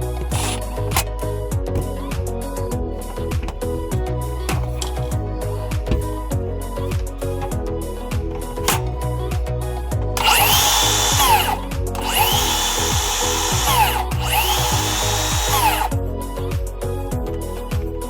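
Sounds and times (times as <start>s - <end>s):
background music: 0.0s - 18.0s
circular saw motor whine: 10.2s - 15.9s.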